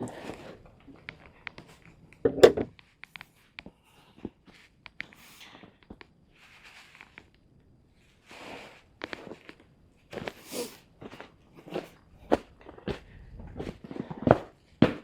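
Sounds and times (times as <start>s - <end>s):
handling clicks and taps: 2.3s - 2.8s.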